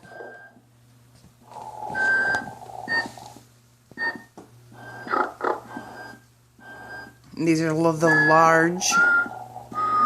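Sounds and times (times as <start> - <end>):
low steady hum: 0.0 - 10.0
toy snoring with whistle: 1.5 - 3.3, 8.1 - 10.0.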